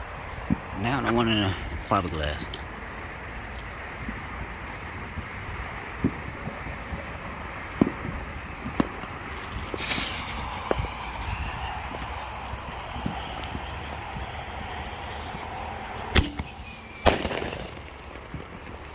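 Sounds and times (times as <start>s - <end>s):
firework whistling: 9.3s - 18.9s
firework mortar lift-off: 9.7s - 18.9s
firework bangs: 9.8s - 18.9s.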